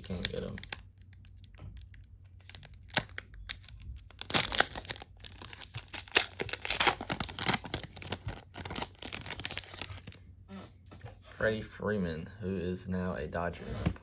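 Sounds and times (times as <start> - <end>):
wrapper being torn and crinkled: 0.0 - 10.2.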